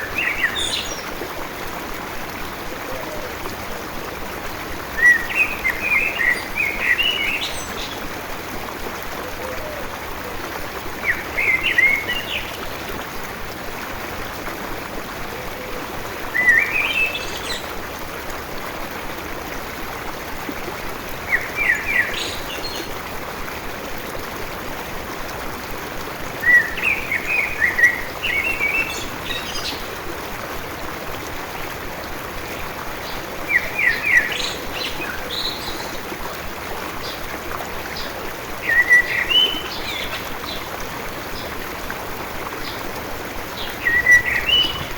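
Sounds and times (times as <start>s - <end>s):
stream rushing: 0.0s - 44.9s
songbird chirping: 43.6s - 44.9s.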